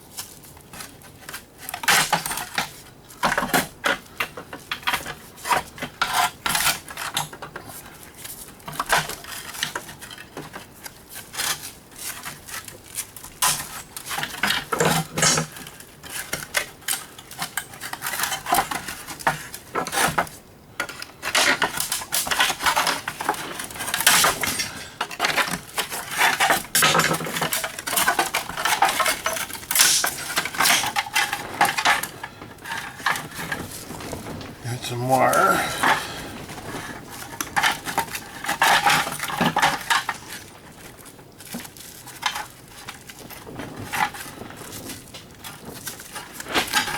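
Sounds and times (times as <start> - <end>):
small parts clinking and rattling: 14.2 - 15.8, 21.2 - 34.1.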